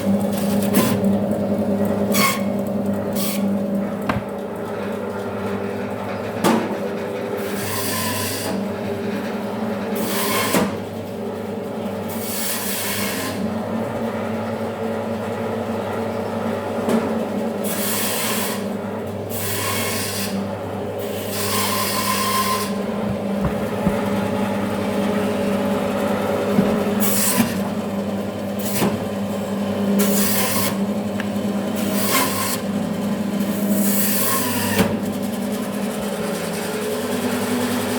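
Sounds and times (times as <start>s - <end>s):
band saw motor hum: 20.4s - 34.6s.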